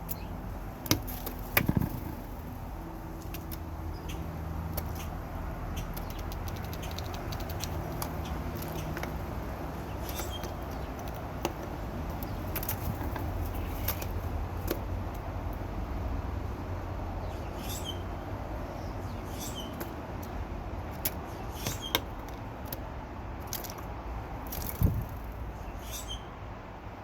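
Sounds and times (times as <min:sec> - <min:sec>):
sharp clicks: 0:03.2 - 0:09.2
faint bird chirps: 0:25.6 - 0:26.3.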